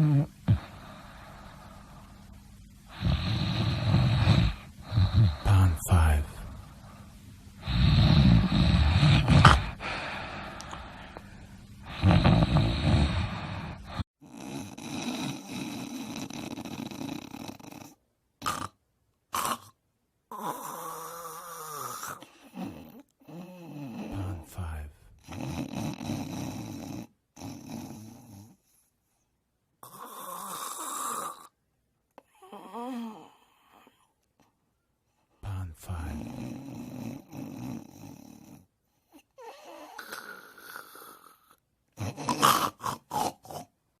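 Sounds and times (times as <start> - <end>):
loud snoring: 0.0 - 2.0, 2.9 - 6.8, 7.6 - 11.2, 11.8 - 28.8, 29.8 - 31.6, 32.3 - 34.0, 35.5 - 43.7
breathy hissing breath: 0.0 - 17.0
sharp snort: 2.9 - 5.5, 7.6 - 11.1, 11.9 - 19.8, 40.0 - 43.7.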